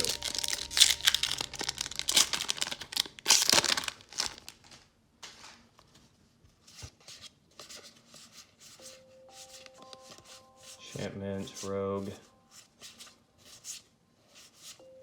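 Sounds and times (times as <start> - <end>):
plastic wrapper crinkling and tearing: 0.0 - 4.9.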